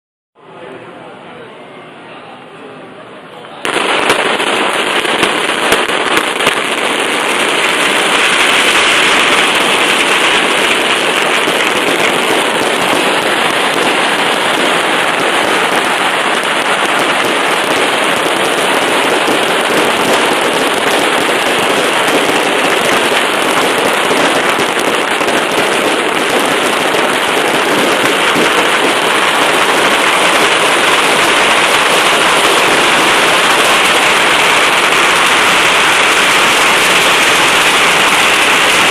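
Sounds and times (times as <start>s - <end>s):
firecracker bangs: 3.6s - 38.9s
firecrackers crackling: 3.6s - 38.9s.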